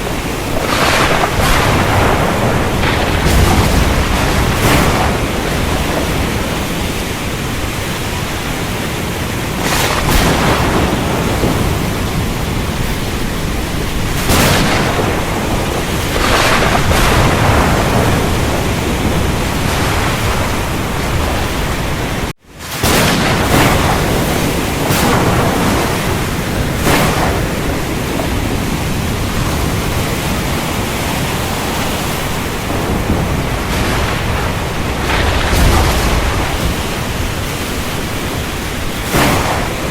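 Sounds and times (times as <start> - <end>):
heavy rain: 0.0 - 39.9
thunder rumbles: 0.0 - 39.9.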